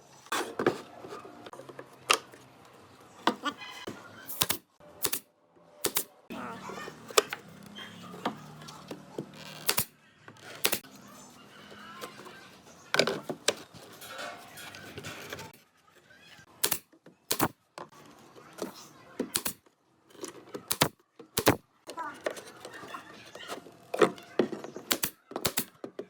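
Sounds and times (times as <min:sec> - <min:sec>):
faint voices: 0:05.6 - 0:16.6.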